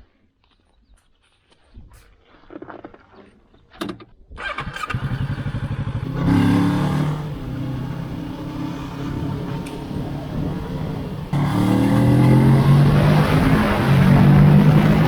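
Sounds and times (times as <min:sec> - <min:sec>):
motorcycle engine starting and idling: 0:04.4 - 0:15.0.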